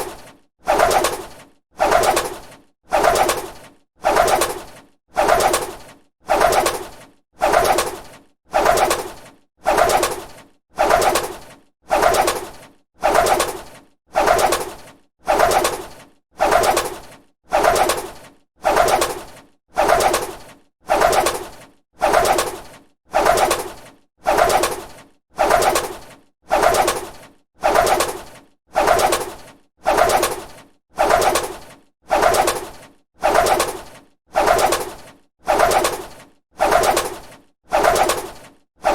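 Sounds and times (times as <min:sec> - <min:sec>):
bird wings flapping: 0:00.0 - 0:38.9.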